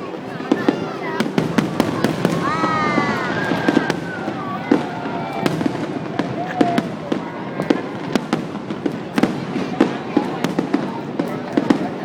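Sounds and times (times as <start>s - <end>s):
fireworks crackling: 0.0s - 12.0s
fireworks cracks and pops: 0.0s - 12.0s
firework whistling glide: 2.0s - 8.2s.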